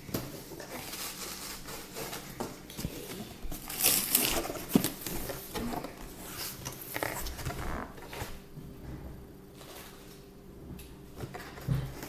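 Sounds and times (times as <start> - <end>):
packaging rustling: 0.6 - 8.3.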